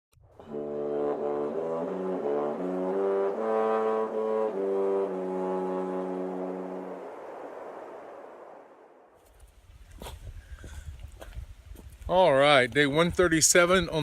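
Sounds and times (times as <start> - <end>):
brass tune: 0.4 - 7.9.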